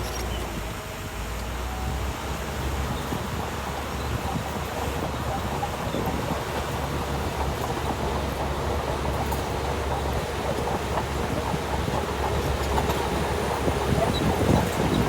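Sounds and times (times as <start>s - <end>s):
bulldozer diesel engine rumbling: 0.0s - 15.0s
engine clatter: 0.0s - 15.0s.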